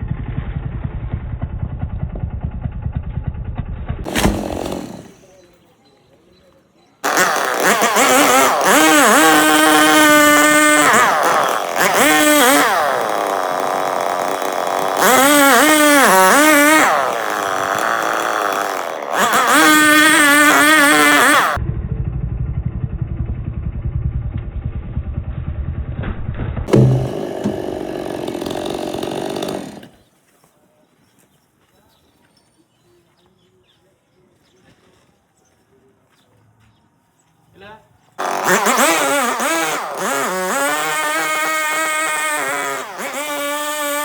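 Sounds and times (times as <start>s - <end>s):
chainsaw engine revving: 4.0s - 5.5s, 7.0s - 21.6s, 26.7s - 30.0s, 38.2s - 44.0s.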